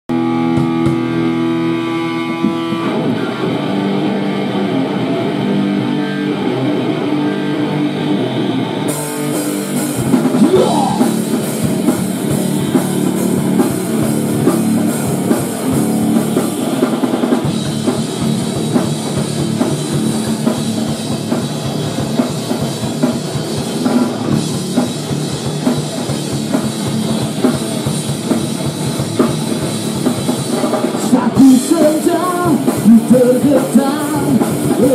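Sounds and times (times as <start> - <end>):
drum kit: 0.1 - 5.1, 8.9 - 34.9
bass guitar: 0.1 - 34.9
distorted electric guitar: 0.1 - 34.9.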